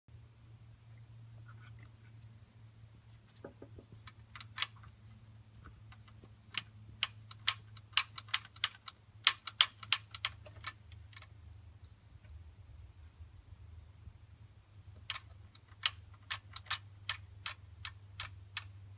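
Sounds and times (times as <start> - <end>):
faint low hum: 0.1 - 18.9
sharp clicks of small hard objects: 5.9 - 11.3, 15.0 - 18.8.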